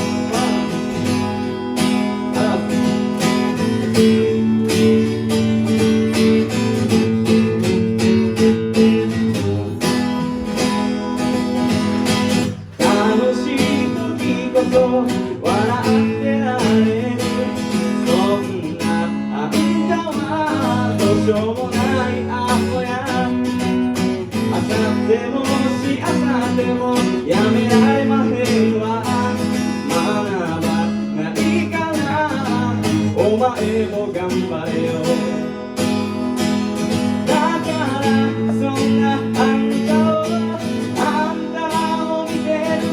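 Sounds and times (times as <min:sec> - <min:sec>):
person singing: 0:00.0 - 0:36.1, 0:37.0 - 0:42.9
strummed acoustic guitar: 0:00.0 - 0:42.9.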